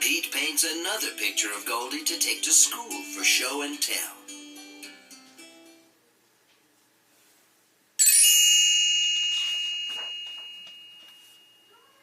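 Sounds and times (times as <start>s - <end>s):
bright chime ringing: 8.0s - 12.0s.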